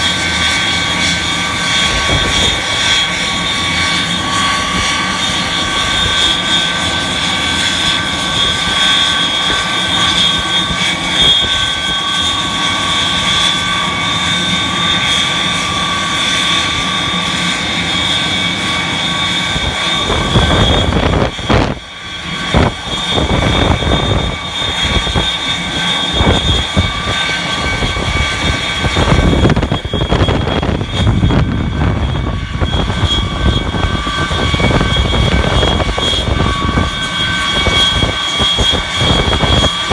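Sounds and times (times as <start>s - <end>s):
machine running with high whine: 0.0s - 39.9s
wind buffeting microphone: 0.0s - 39.9s.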